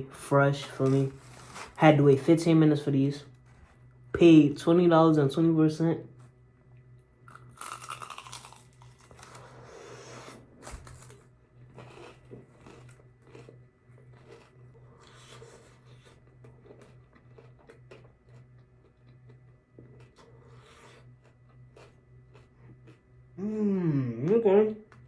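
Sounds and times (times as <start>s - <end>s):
low steady hum: 0.0s - 25.0s
crunching fried chicken: 7.2s - 23.3s.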